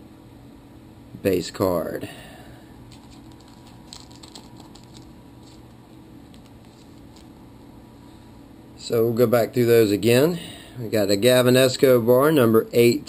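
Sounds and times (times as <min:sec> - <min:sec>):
low room hum: 0:00.0 - 0:13.0
trading cards clicking: 0:02.9 - 0:05.7, 0:06.3 - 0:07.3.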